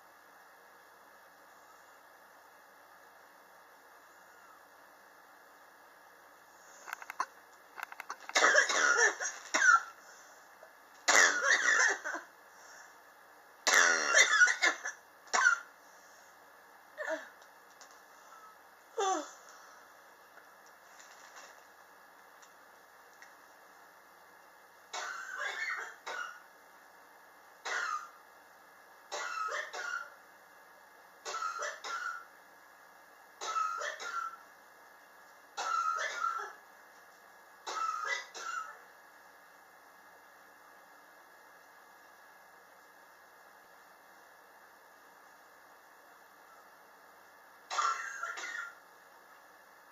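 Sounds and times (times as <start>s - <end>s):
person coughing: 8.3s - 10.0s, 11.1s - 12.3s, 13.7s - 15.7s, 25.0s - 26.4s, 35.6s - 36.6s, 37.7s - 38.8s, 47.7s - 48.8s.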